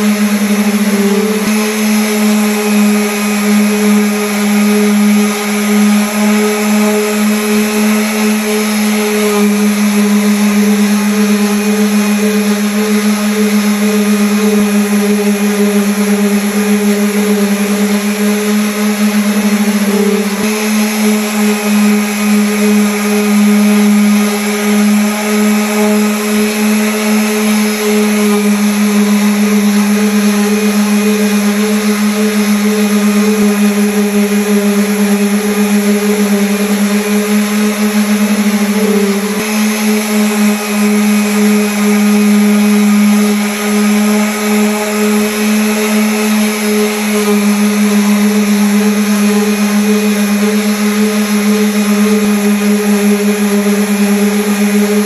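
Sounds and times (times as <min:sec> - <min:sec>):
electric sander on wood: 0:00.0 - 0:55.0.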